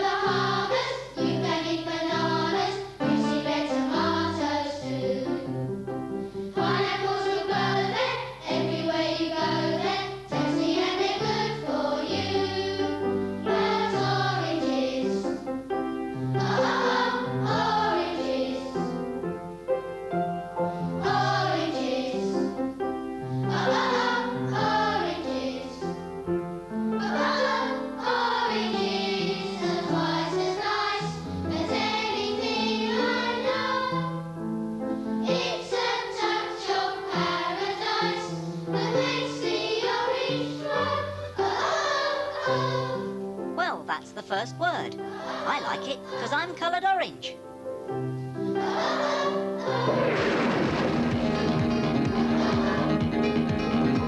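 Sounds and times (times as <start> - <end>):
group of voices singing: 0.0 - 5.5, 6.6 - 15.2, 16.4 - 19.0, 21.0 - 22.4, 23.5 - 25.9, 27.0 - 34.1, 35.3 - 43.1, 45.0 - 46.4, 48.4 - 50.4, 51.9 - 53.4
instrumental accompaniment: 5.2 - 54.0.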